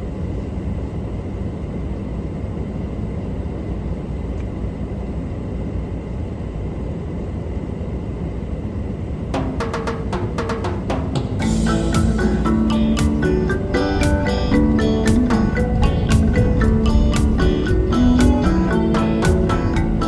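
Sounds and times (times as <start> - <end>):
music with percussive strikes: 9.4 - 20.0.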